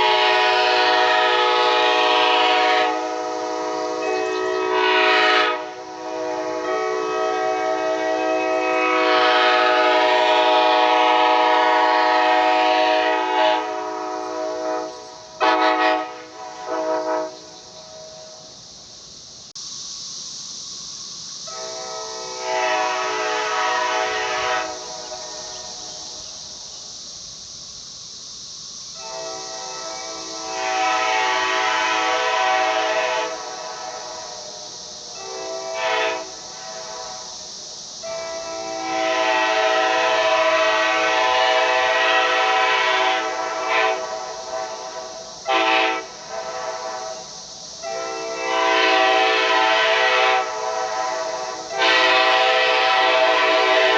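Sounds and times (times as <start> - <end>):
five-chime train horn: 0.0 - 18.3, 21.5 - 25.8, 38.0 - 53.9
steady high hiss: 0.0 - 53.9.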